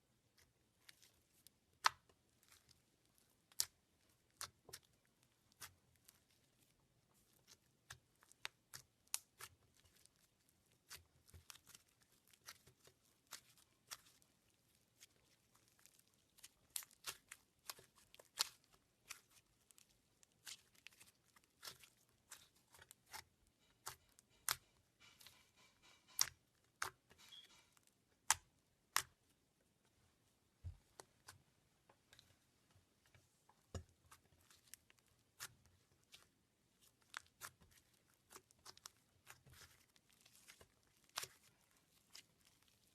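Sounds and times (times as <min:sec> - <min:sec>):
slime crinkling: 0:00.3 - 0:29.4, 0:30.4 - 0:42.9.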